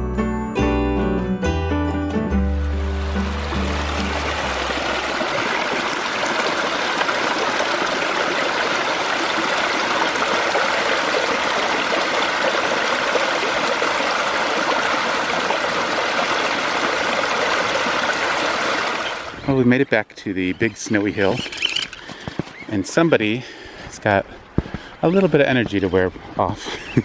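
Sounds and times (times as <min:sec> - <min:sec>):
fast-flowing stream rushing: 0:02.6 - 0:19.4.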